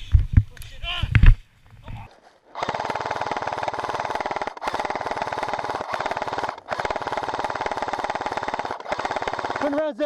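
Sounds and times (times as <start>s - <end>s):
airsoft gun firing full-auto: 2.6s - 10.0s.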